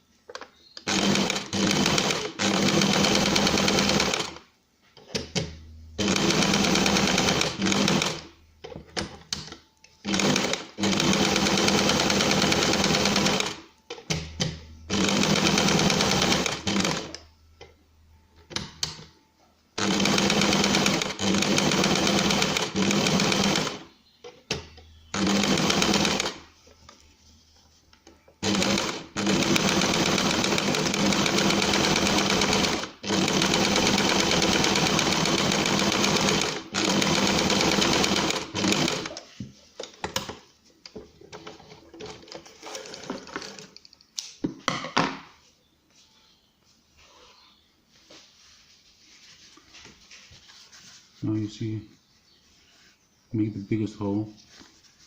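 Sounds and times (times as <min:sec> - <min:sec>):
sewing machine stitching: 0:00.8 - 0:04.4, 0:06.0 - 0:08.3, 0:10.0 - 0:13.6, 0:14.9 - 0:17.2, 0:19.8 - 0:23.8, 0:25.1 - 0:26.4, 0:28.4 - 0:39.2.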